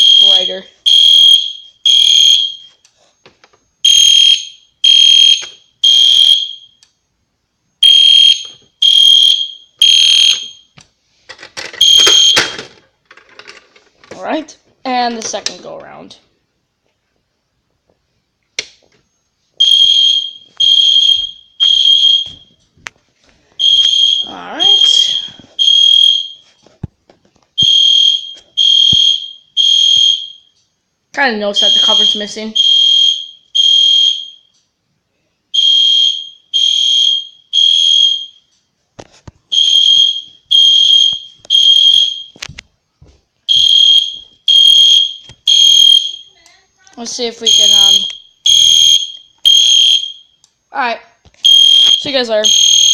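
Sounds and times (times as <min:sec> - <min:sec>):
fire alarm horn blasts: 0:00.0 - 0:02.8, 0:03.8 - 0:06.8, 0:07.8 - 0:10.7, 0:11.8 - 0:12.6, 0:19.6 - 0:22.5, 0:23.6 - 0:26.5, 0:27.6 - 0:30.6, 0:31.5 - 0:34.5, 0:35.5 - 0:38.5, 0:39.5 - 0:42.4, 0:43.5 - 0:46.3, 0:47.5 - 0:50.4, 0:51.4 - 0:52.9
high-pitched alarm horn blasts: 0:47.5 - 0:50.2.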